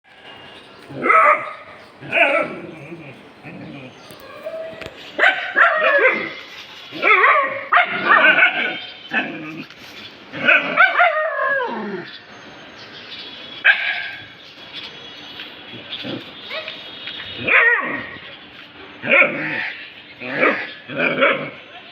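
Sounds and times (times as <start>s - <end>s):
dog barking and whining: 0.9s - 9.3s, 10.4s - 11.8s, 17.4s - 18.2s.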